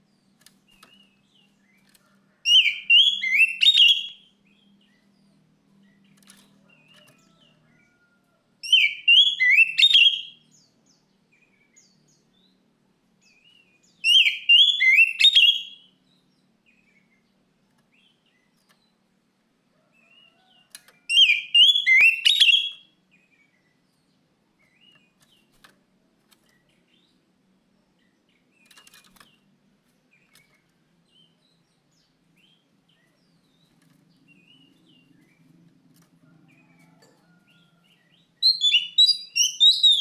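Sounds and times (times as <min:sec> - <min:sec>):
bird singing whistled phrase: 0:02.5 - 0:04.1, 0:14.1 - 0:15.8, 0:21.1 - 0:22.8, 0:38.4 - 0:40.0
faint bird chirps: 0:19.8 - 0:23.8, 0:30.1 - 0:40.0.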